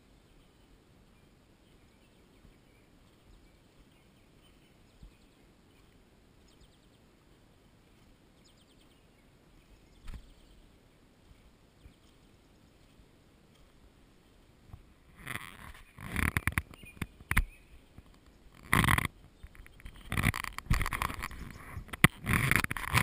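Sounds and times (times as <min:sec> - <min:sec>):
low background hiss: 0:00.0 - 0:22.1
high bird trills: 0:15.2 - 0:17.9
sharp click: 0:15.3 - 0:17.5.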